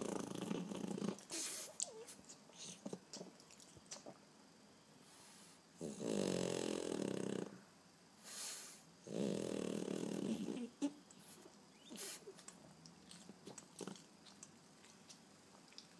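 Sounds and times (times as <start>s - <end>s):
dog snoring: 0.0s - 2.0s, 5.1s - 7.6s, 8.3s - 11.0s, 13.4s - 14.1s.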